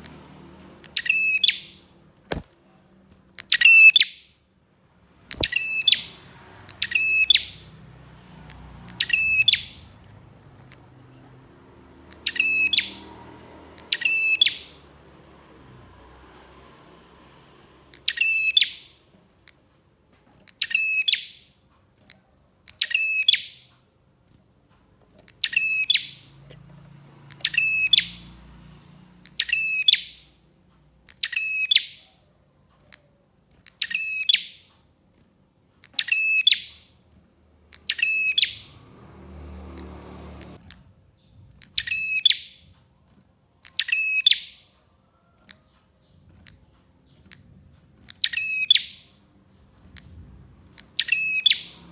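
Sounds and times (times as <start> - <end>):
bird song rattling phrase: 5.3 - 7.8, 8.4 - 15.1.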